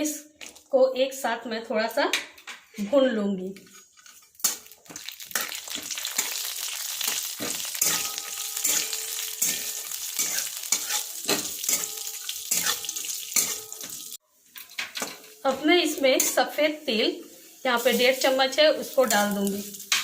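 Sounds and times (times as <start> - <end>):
spoon scraping a pan: 3.6 - 16.5
nuts sizzling in hot ghee: 4.3 - 14.5, 15.3 - 20.0.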